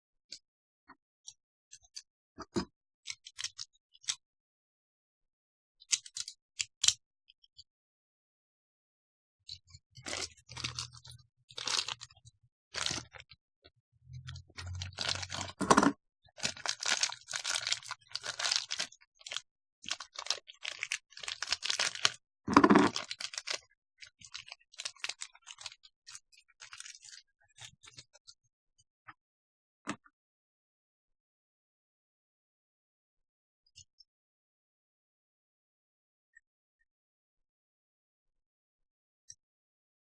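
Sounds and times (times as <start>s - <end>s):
plastic packaging crinkling: 10.0s - 12.1s, 14.8s - 15.6s, 16.4s - 23.6s.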